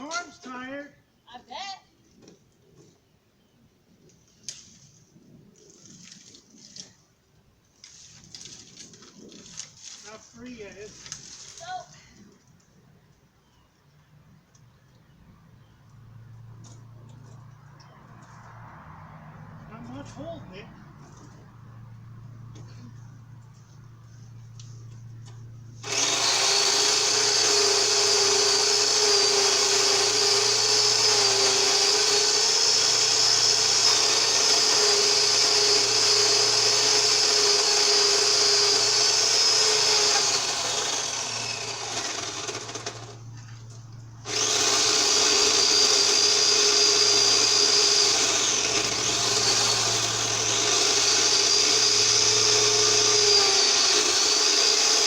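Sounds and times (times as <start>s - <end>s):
power saw cutting wood: 25.8s - 55.0s.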